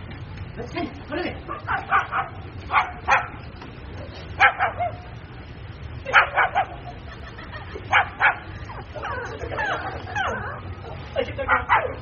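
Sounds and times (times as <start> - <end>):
low background hum: 0.0 - 12.0
puppy yapping: 1.5 - 3.4, 4.4 - 5.1, 6.1 - 6.9, 11.5 - 12.0.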